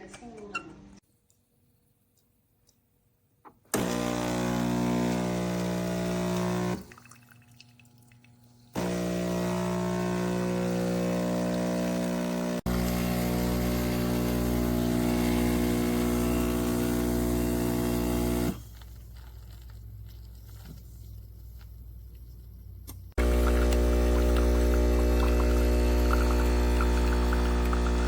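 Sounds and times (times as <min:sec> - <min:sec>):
espresso machine pump humming: 0:03.8 - 0:06.8, 0:08.8 - 0:18.6, 0:23.2 - 0:28.0.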